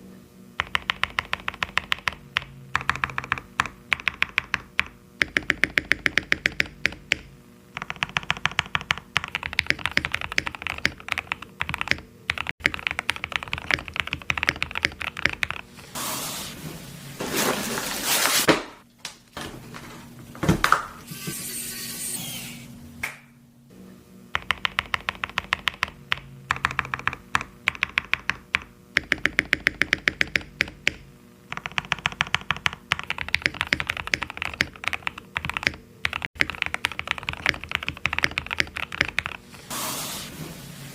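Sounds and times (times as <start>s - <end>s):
mechanical keyboard typing: 0.6s - 15.7s, 24.4s - 39.4s.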